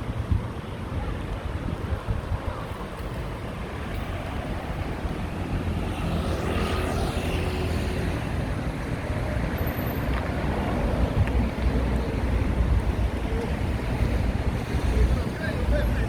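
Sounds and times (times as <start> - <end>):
wind buffeting microphone: 0.0 - 6.6, 7.2 - 16.0
street traffic: 0.0 - 16.0
vehicle passing by: 4.2 - 12.3.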